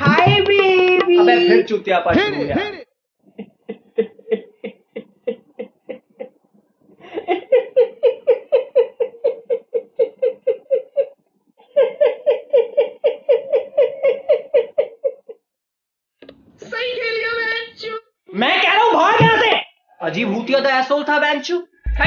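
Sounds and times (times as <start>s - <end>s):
person laughing rhythmically: 1.2s - 6.4s, 7.0s - 15.4s.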